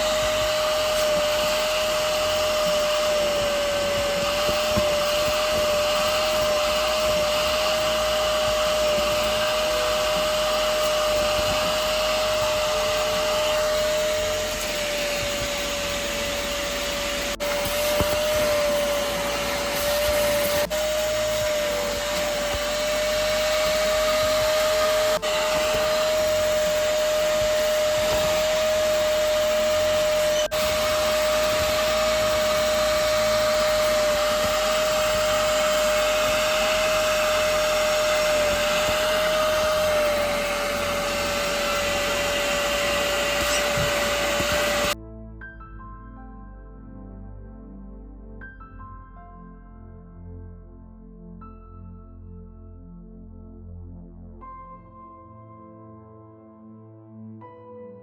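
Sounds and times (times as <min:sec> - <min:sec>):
spot cleaner suction whine: 0:00.0 - 0:45.0.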